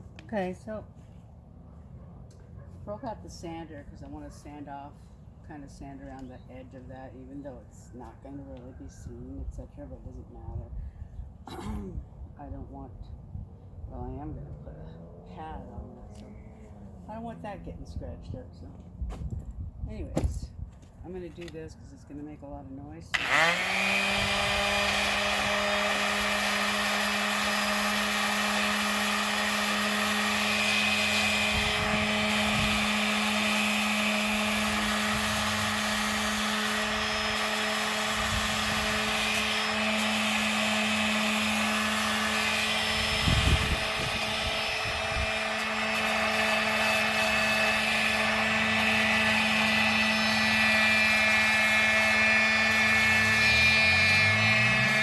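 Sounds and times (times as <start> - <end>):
electric sander whining: 23.1 - 55.0.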